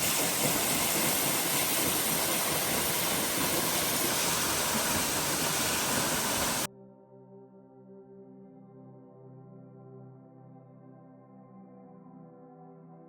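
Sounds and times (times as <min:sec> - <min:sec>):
rushing water hiss: 0:00.0 - 0:06.7.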